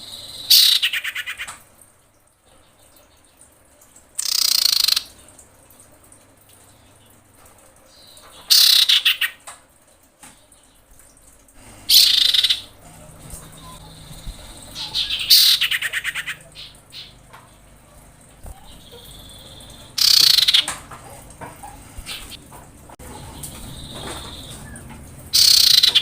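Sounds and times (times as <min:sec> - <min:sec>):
bird high trills: 0:00.0 - 0:01.5, 0:04.2 - 0:05.1, 0:08.1 - 0:09.4, 0:11.9 - 0:12.7, 0:13.6 - 0:17.2, 0:18.6 - 0:20.7, 0:25.4 - 0:26.0.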